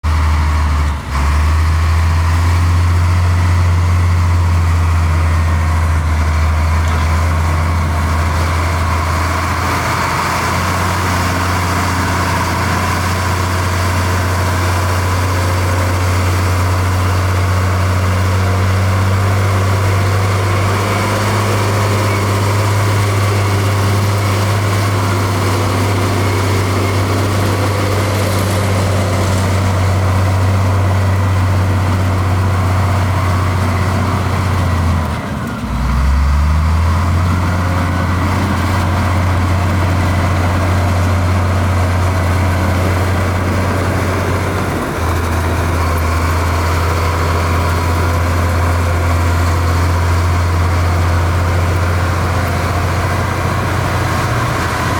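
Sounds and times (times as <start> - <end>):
heavy diesel engine running: 0.0 - 54.9.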